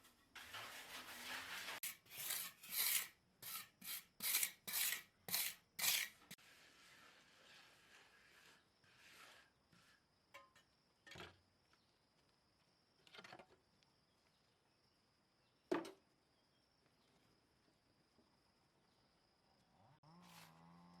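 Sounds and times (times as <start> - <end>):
faint scrapes: 0.4 - 3.6, 6.3 - 10.1.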